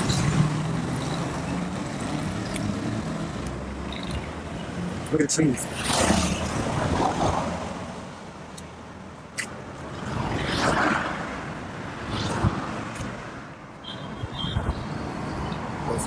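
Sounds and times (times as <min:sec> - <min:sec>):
low traffic rumble: 0:00.0 - 0:16.0
vehicles passing: 0:00.0 - 0:16.0.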